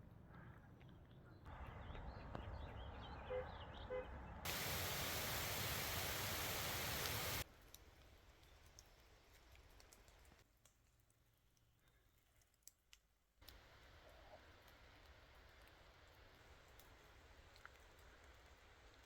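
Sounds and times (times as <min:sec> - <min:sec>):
loud downpour hiss: 0:04.5 - 0:07.4, 0:13.5 - 0:19.0
rain hissing: 0:04.5 - 0:07.5, 0:13.4 - 0:19.0
raindrop ticks: 0:04.5 - 0:19.0.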